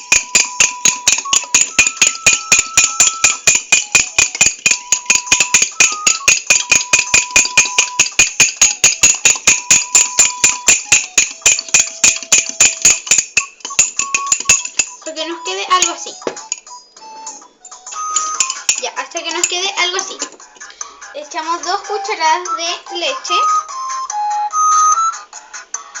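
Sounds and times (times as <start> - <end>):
utensil beating batter: 0.0 - 16.7, 17.9 - 21.9.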